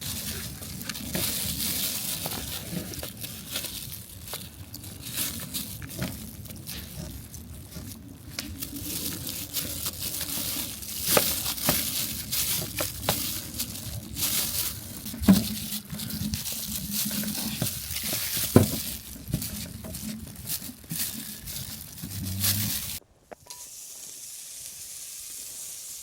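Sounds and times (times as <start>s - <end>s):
crinkling handling noise: 0.0s - 24.2s.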